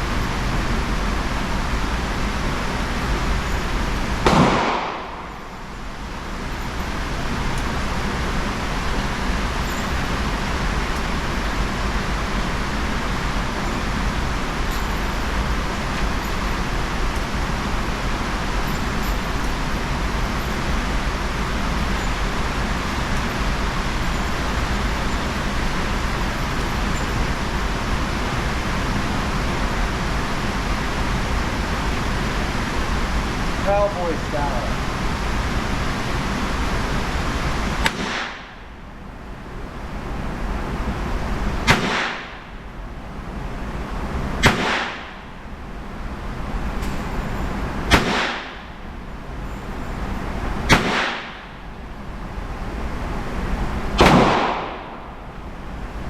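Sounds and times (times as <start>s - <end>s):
steady rushing noise: 0.0s - 46.8s
revolver gunshot: 4.2s - 5.6s, 37.8s - 38.5s, 41.6s - 42.5s, 44.4s - 45.2s, 47.9s - 48.7s, 50.7s - 51.5s, 54.0s - 55.2s.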